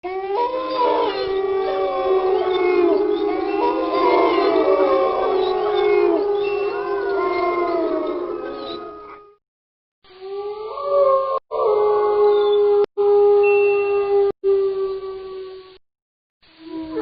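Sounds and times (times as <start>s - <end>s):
wolves howling in chorus: 0.0s - 9.4s.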